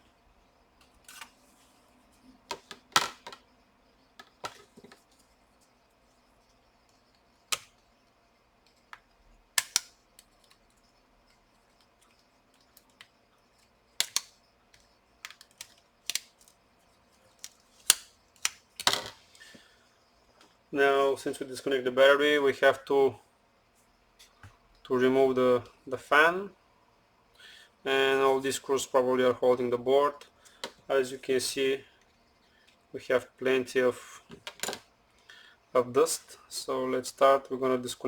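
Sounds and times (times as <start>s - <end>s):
tool clicking on laptop parts: 8.6s - 16.5s.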